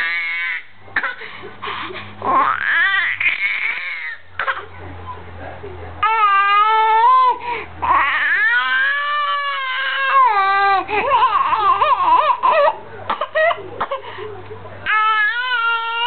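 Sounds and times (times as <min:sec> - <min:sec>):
baby crying: 0:00.0 - 0:01.3, 0:02.2 - 0:04.7, 0:06.0 - 0:12.8, 0:14.8 - 0:16.0
rasping breath: 0:01.1 - 0:02.2.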